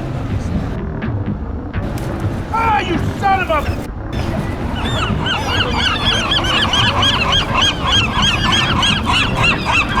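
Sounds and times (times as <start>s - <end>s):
geese honking: 3.7s - 10.0s.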